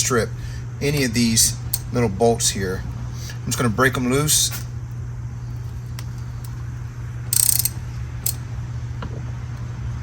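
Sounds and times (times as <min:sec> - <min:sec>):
steady low hum: 0:00.0 - 0:10.0
harsh ratchet burst: 0:07.3 - 0:08.4
ratchet clicking: 0:07.3 - 0:08.4.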